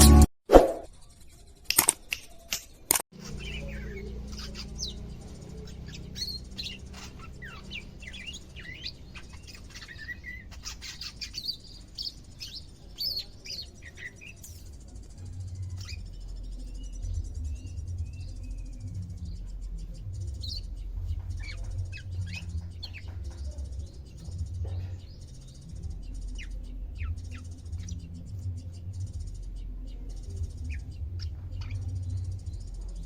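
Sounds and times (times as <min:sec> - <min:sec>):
sharp clicks: 0:01.6 - 0:03.0
bird chirps and sweeping calls: 0:03.2 - 0:28.1.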